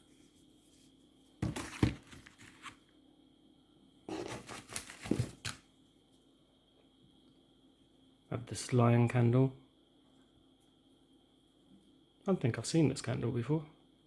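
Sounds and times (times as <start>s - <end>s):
packaging crinkling and rustling: 1.4s - 2.8s, 4.1s - 5.6s.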